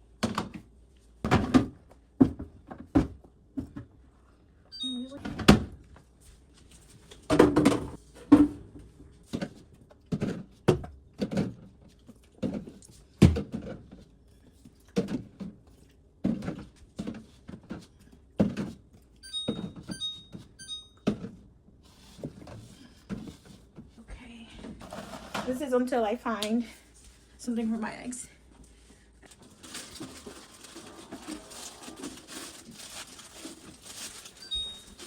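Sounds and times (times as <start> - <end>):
items thunking on fridge shelves: 0.2 - 3.9, 7.2 - 11.7, 12.4 - 14.0, 18.4 - 21.4.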